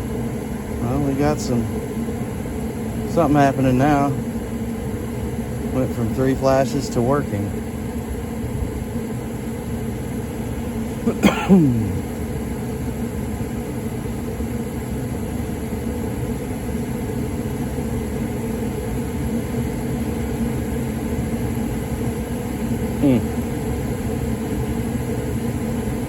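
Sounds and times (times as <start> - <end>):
gas furnace humming: 0.0 - 26.0
cough-like vocal sound: 11.1 - 12.0.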